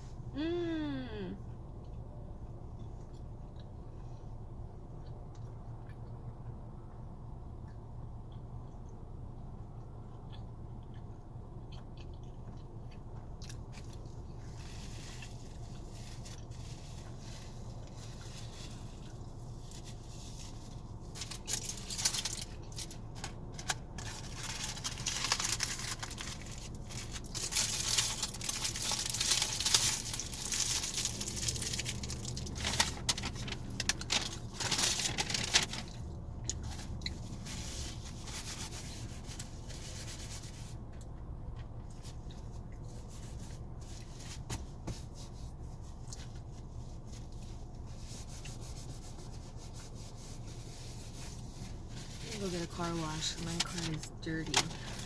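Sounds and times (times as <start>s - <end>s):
low steady hum: 0.0s - 55.0s
food packaging crinkling: 13.5s - 40.8s, 45.9s - 55.0s.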